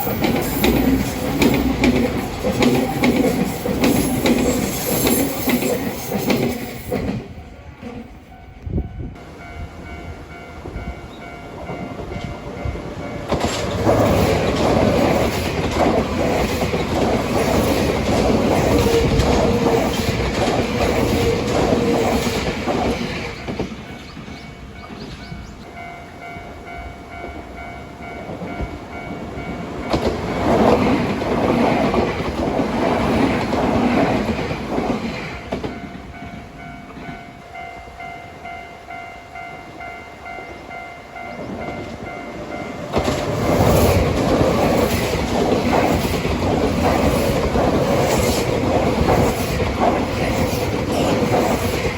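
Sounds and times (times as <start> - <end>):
train wheels clattering over rail joints: 0.0 - 8.1, 12.0 - 25.2, 29.6 - 36.0, 42.8 - 51.9.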